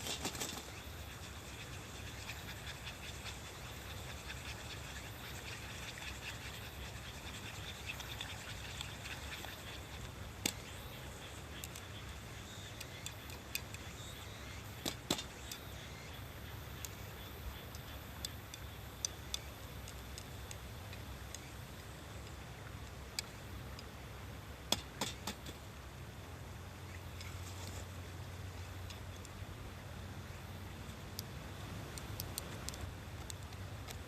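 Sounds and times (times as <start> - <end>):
low steady rumble: 15.4 - 34.0.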